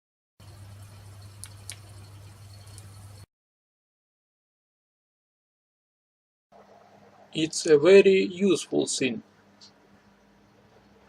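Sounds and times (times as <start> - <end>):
low steady hum with hiss: 0.4 - 3.2, 6.6 - 11.0
small clicks: 0.8 - 3.2.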